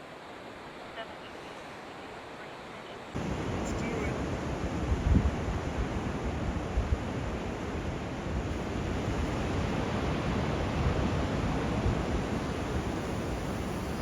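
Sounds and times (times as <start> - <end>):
wind buffeting microphone: 3.2 - 14.0.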